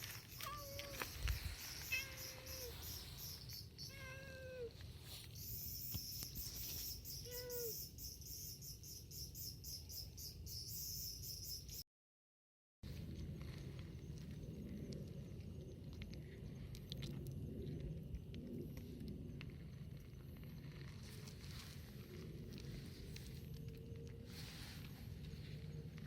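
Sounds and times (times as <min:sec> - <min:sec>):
cat meowing: 0:00.3 - 0:01.1, 0:01.8 - 0:02.8, 0:03.8 - 0:04.8.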